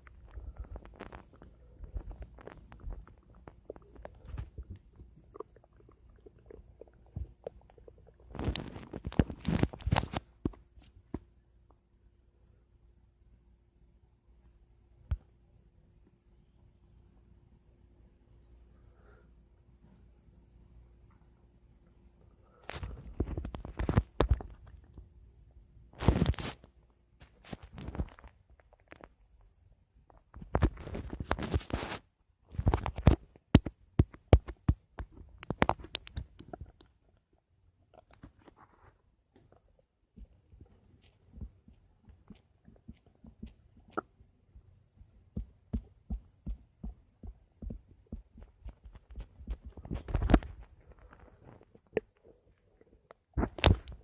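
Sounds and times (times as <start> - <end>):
stomach gurgling: 0.0 - 10.6, 22.6 - 25.1, 27.4 - 29.4, 34.0 - 44.4, 45.3 - 54.0.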